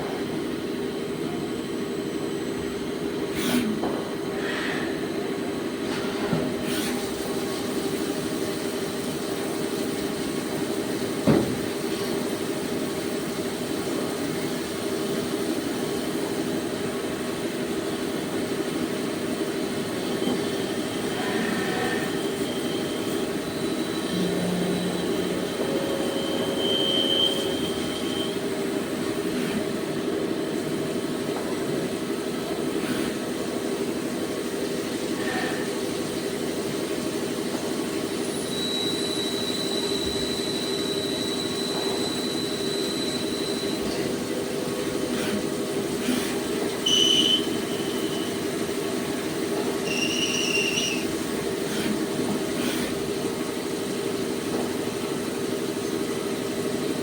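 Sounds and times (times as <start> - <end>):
lathe machine drone: 19.6 - 31.4.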